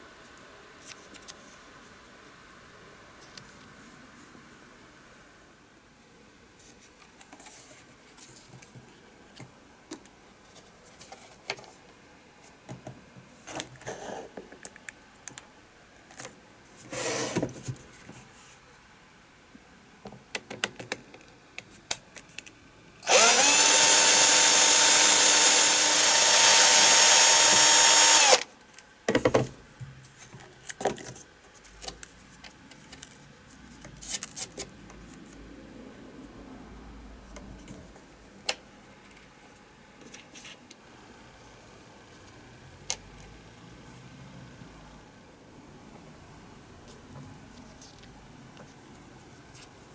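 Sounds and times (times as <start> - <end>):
electric drill running: 23.0 - 28.4.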